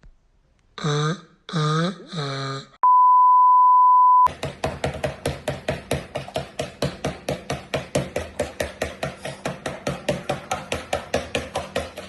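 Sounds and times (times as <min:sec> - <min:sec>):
whisk tapping bowl beating eggs: 0:04.3 - 0:12.0.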